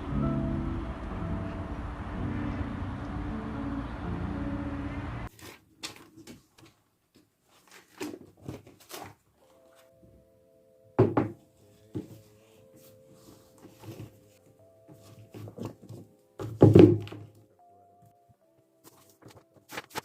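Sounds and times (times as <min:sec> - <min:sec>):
background music: 0:00.0 - 0:05.3, 0:09.3 - 0:20.0.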